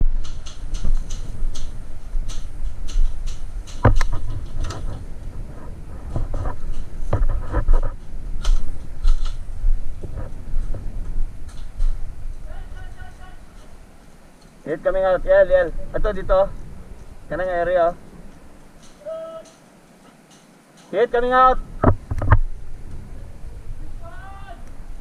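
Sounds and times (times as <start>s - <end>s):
wind on microphone: 0.0s - 14.0s, 21.4s - 25.0s
low rumble of movement: 0.0s - 19.0s, 21.2s - 25.0s.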